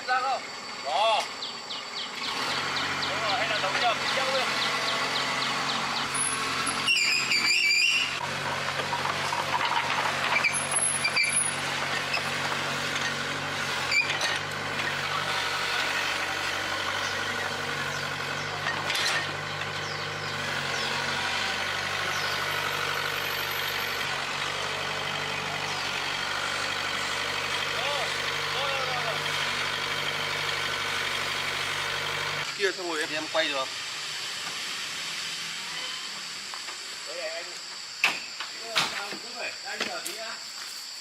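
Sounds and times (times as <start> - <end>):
excavator engine idling: 8.2 - 32.5.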